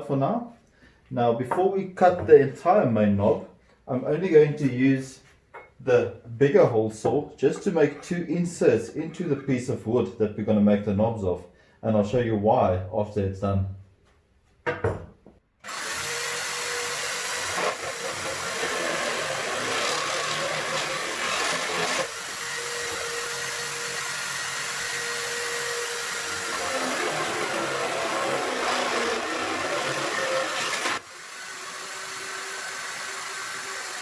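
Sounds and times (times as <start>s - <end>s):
electric drill cutting wood: 15.6s - 34.0s.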